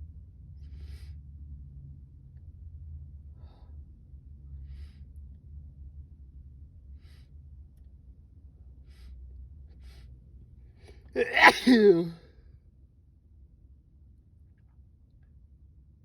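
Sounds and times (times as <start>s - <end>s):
man sneezing: 11.2s - 12.2s.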